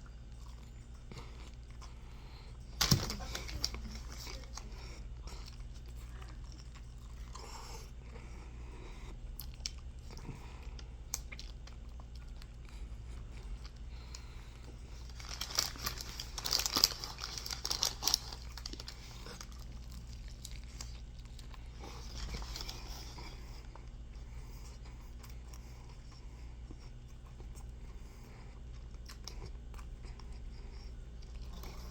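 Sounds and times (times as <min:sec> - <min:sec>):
crunchy chewing: 0:00.0 - 0:31.9
steady low hum: 0:00.0 - 0:31.9
paper crinkling: 0:02.8 - 0:04.8, 0:14.9 - 0:23.1.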